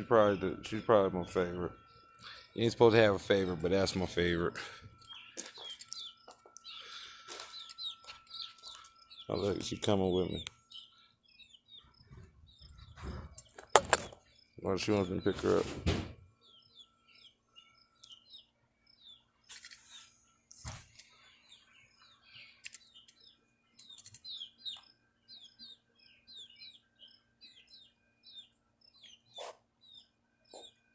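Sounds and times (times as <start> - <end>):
small birds chirping: 0.0 - 30.9
thump: 15.6 - 16.2.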